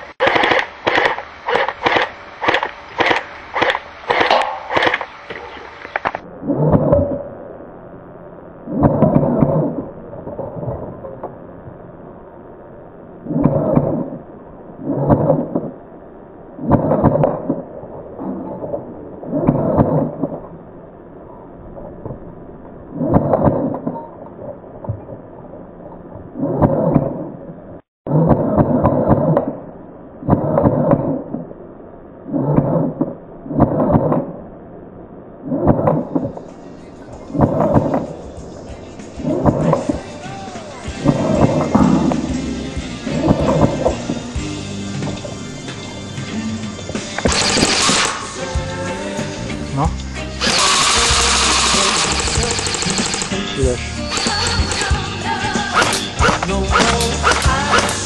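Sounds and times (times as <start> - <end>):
airsoft rifle full-auto bursts: 0.0 - 5.4, 47.2 - 48.3, 50.4 - 53.5, 55.8 - 58.0.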